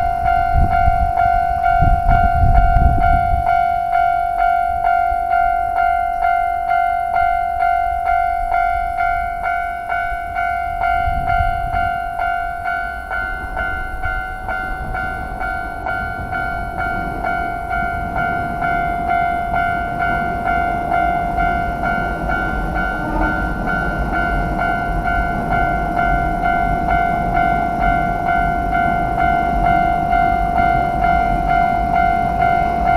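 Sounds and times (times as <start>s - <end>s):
level crossing bell ringing: 0.0s - 32.9s
train rumbling: 0.0s - 32.9s.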